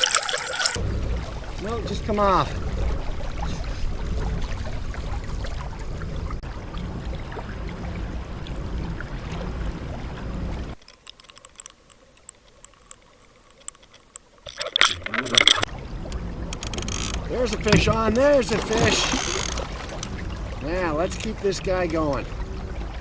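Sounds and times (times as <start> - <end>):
small sharp ticks and clicks: 0.0 - 0.8, 10.8 - 18.3, 18.9 - 20.2
water and wind rumble: 0.0 - 23.0.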